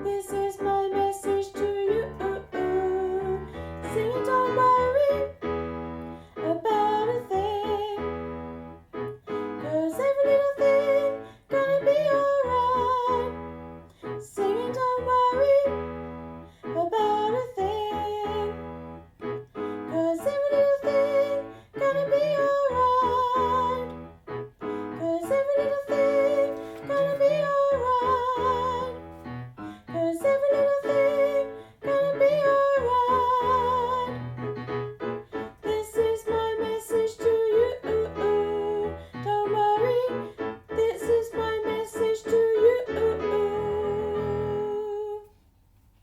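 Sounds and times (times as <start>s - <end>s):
women singing: 0.0s - 5.4s, 9.6s - 13.4s, 19.9s - 23.9s, 25.0s - 29.0s, 29.8s - 34.2s, 35.6s - 45.3s
piano accompaniment: 0.0s - 45.3s.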